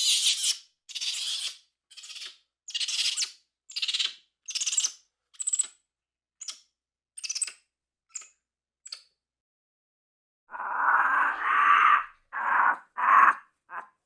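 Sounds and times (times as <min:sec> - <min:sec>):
monkey high chirps: 0:00.0 - 0:05.7.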